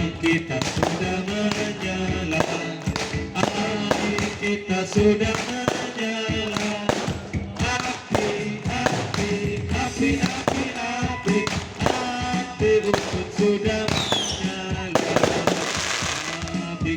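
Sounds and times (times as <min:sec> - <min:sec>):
music with held melodic notes: 0:00.0 - 0:05.8
whistling glide: 0:13.9 - 0:14.6.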